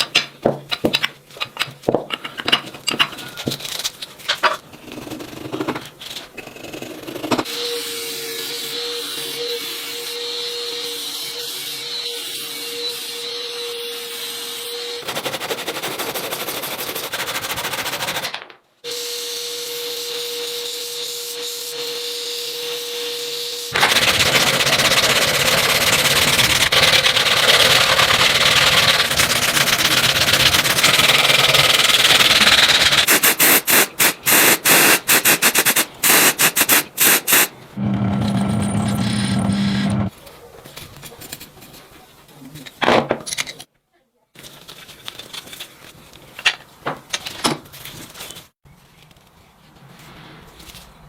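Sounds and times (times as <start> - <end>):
power tool grinding metal: 36.5 - 40.1.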